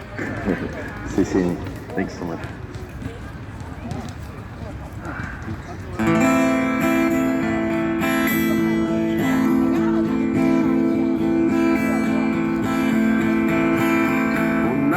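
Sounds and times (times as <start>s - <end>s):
acoustic guitar strumming chords: 6.0s - 14.9s.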